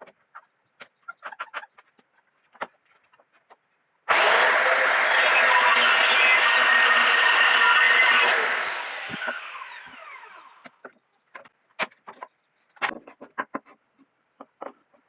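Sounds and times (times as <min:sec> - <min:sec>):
power tool spinning down: 0:04.1 - 0:10.6
wood pieces knocking: 0:10.8 - 0:15.0.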